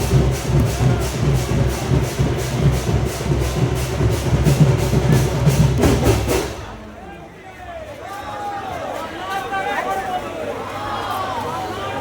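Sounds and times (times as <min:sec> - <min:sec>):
heavy drumming: 0:00.0 - 0:07.2.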